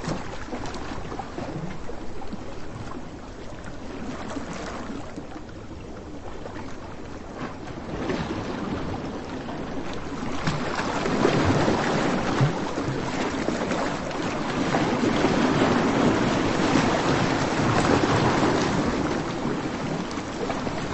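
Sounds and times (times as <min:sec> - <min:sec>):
wind: 0:00.0 - 0:20.9
sea waves washing onto beach: 0:08.0 - 0:20.9.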